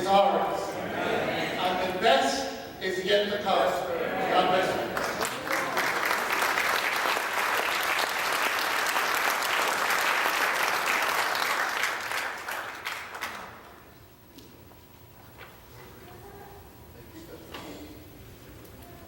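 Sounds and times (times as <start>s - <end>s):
congregation applauding: 4.2s - 13.9s.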